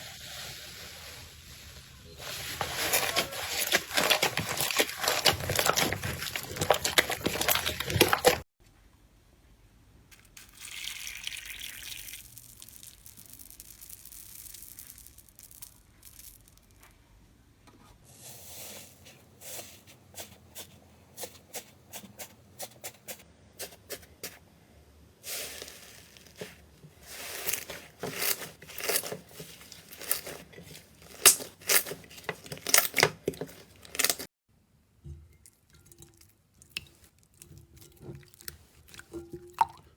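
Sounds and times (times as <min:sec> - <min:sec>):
slime crackling and popping: 0:27.4 - 0:34.3.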